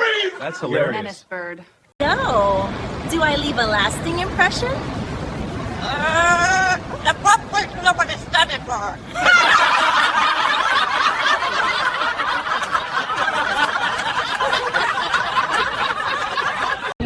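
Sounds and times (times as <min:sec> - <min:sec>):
people laughing hard: 0:05.9 - 0:17.0.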